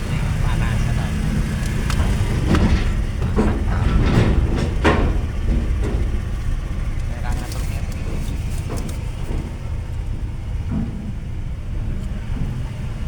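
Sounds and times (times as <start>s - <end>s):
ferry engine rumble: 0.0s - 13.0s
metallic knocks and clanks: 0.0s - 13.0s.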